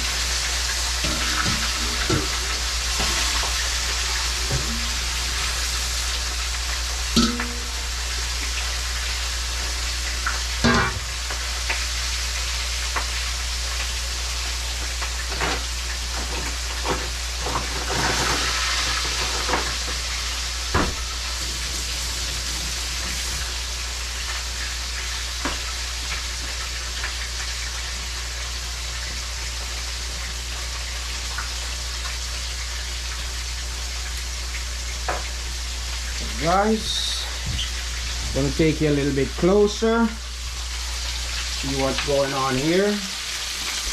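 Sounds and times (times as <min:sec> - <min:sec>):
fish sizzling in hot oil: 0:00.0 - 0:43.9
oil popping and crackling: 0:00.0 - 0:43.9
low hum: 0:01.0 - 0:08.5.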